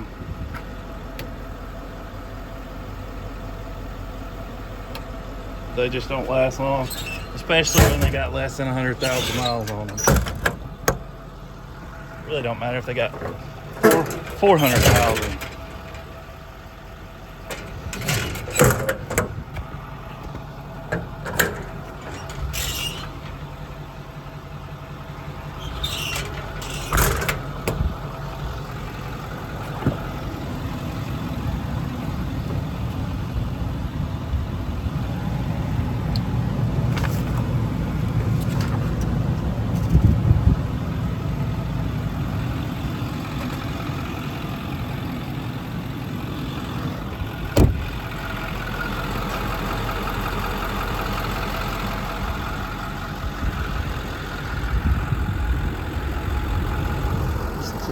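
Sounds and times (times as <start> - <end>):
diesel engine idling: 0.0 - 57.9
sharp clunks and knocks: 29.6 - 30.3, 47.5 - 47.9.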